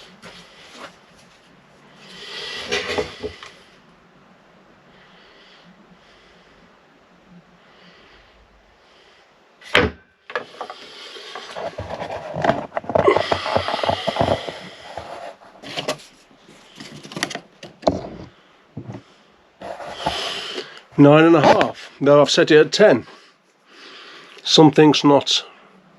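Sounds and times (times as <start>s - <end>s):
tools clattering and scraping on bench: 2.6s - 3.5s, 9.7s - 19.0s.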